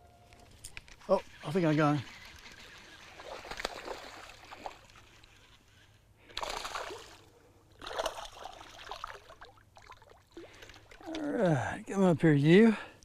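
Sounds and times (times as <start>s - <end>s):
fish splashing at surface: 2.4s - 5.2s, 6.3s - 7.2s.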